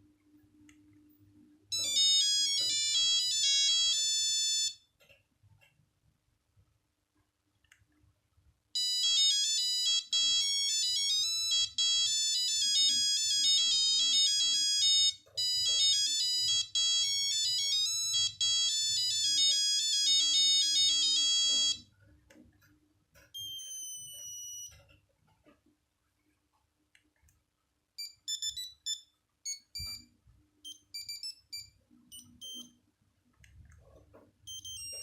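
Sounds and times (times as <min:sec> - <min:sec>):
monophonic phone ringtone: 0:01.7 - 0:04.8, 0:08.8 - 0:21.9, 0:23.4 - 0:24.8, 0:28.0 - 0:30.0, 0:30.6 - 0:32.7, 0:34.5 - 0:35.0.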